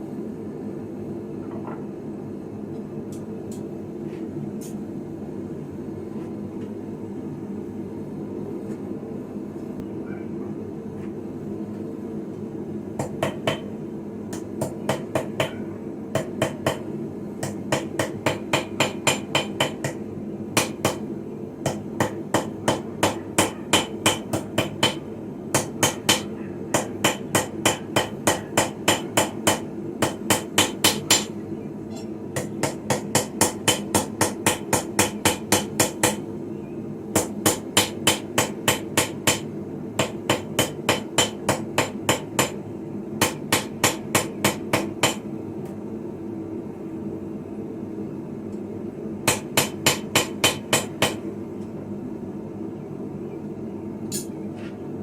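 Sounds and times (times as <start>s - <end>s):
steady low hum: 0.0s - 55.0s
hammer striking hot steel on anvil: 13.0s - 20.0s, 20.6s - 36.2s, 37.2s - 42.6s, 43.2s - 45.3s, 49.2s - 51.3s.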